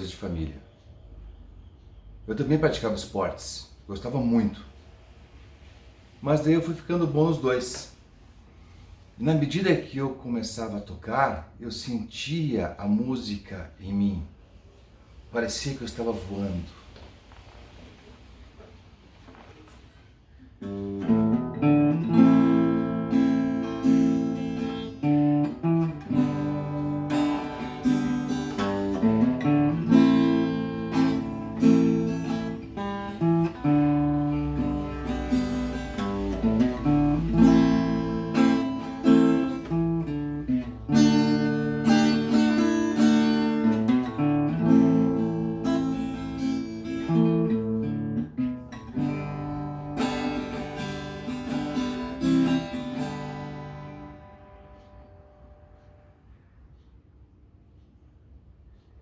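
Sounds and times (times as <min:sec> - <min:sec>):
acoustic guitar playing: 0:20.6 - 0:56.1.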